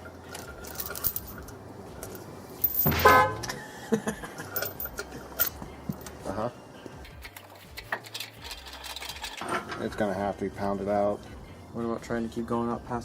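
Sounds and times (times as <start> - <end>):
metal chain and hooks clinking: 0.0 - 3.5, 4.5 - 6.2, 8.0 - 9.8
short loud horn-like sound: 3.0 - 3.5.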